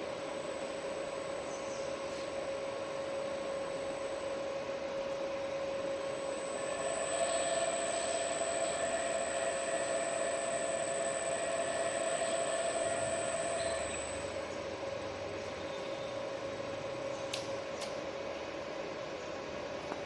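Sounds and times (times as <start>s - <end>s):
noisy hum: 0.0s - 20.0s
electric motor whine: 6.1s - 14.6s.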